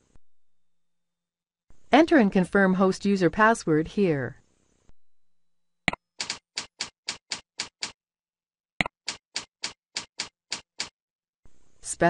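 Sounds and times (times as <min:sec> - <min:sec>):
typing on computer keyboard: 0:05.9 - 0:08.0, 0:09.0 - 0:11.0.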